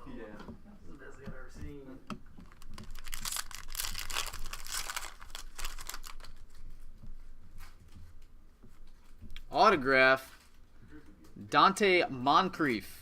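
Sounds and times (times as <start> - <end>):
card packaging crinkling and rustling: 2.4 - 6.7.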